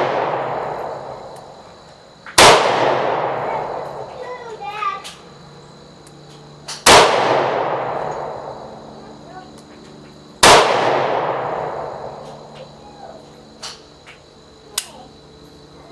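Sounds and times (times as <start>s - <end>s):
revolver shots echoing: 2.4s - 4.1s, 6.8s - 8.8s, 10.4s - 12.5s.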